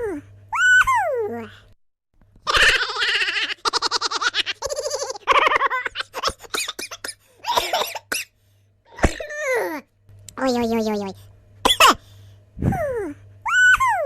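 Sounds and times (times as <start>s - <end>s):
person cackling laughter: 2.4s - 7.0s.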